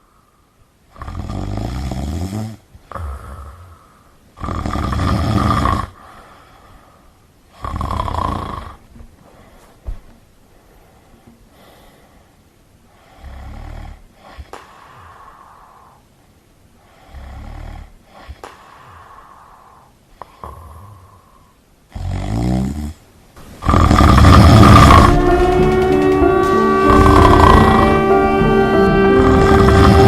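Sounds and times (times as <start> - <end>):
person snoring: 1.0 - 6.1, 16.9 - 23.0, 23.6 - 25.2
loud pitched blast: 23.7 - 30.0.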